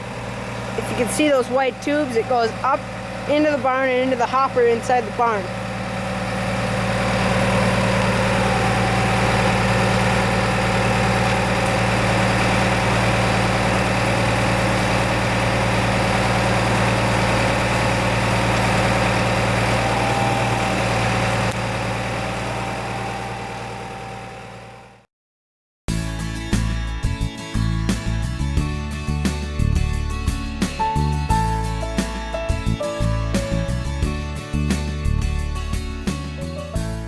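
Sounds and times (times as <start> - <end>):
truck engine running: 0.0 - 25.0.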